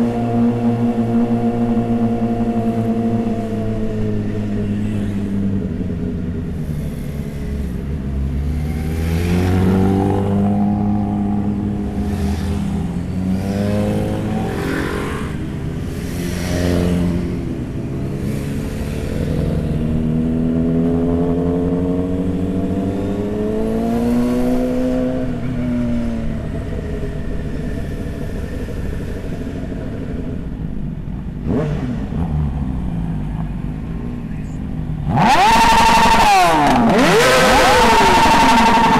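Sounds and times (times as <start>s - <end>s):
motorcycle engine revving: 6.5s - 30.4s, 31.3s - 34.0s, 34.9s - 38.9s.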